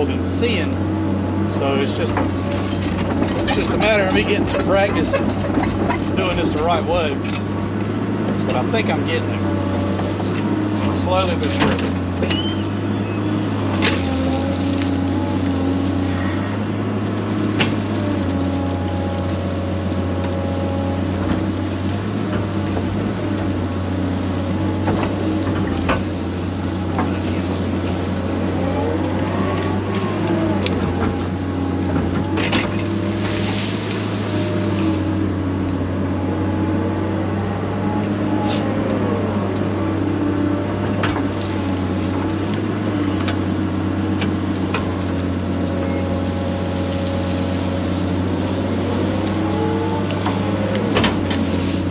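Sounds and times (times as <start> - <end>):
excavator diesel engine: 0.0 - 51.9
sharp knocks and cracks: 17.1 - 20.4, 50.0 - 51.9.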